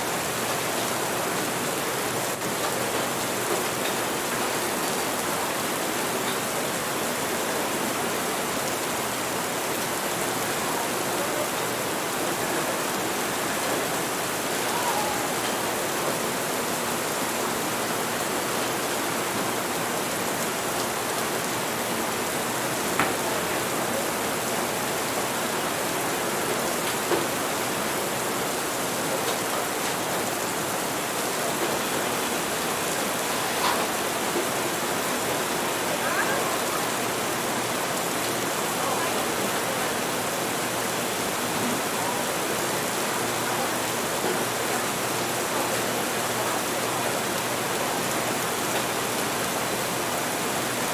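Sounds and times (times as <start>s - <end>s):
steady rain: 0.0s - 50.9s.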